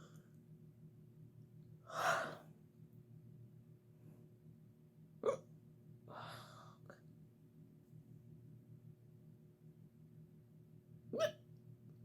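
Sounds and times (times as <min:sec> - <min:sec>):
faint low hum: 0:00.0 - 0:12.0
woman hiccuping: 0:05.2 - 0:05.5, 0:11.2 - 0:11.4.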